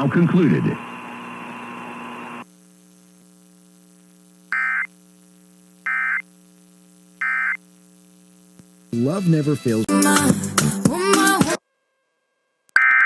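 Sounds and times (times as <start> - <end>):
faint electrical hum: 0.0 - 9.7
digital buzzing bursts: 3.3 - 9.1.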